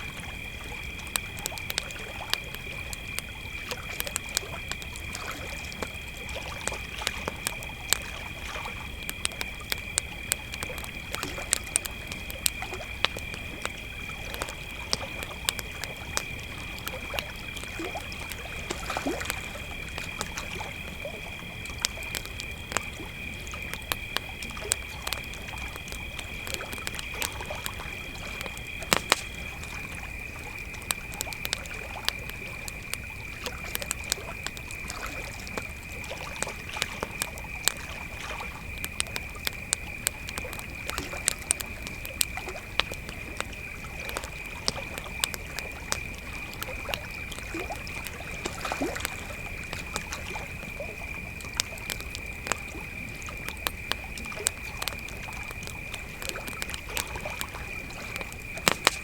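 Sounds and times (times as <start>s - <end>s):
campfire crackling: 0.0s - 59.0s
crickets trilling: 0.0s - 59.0s
lake water lapping: 0.0s - 59.0s.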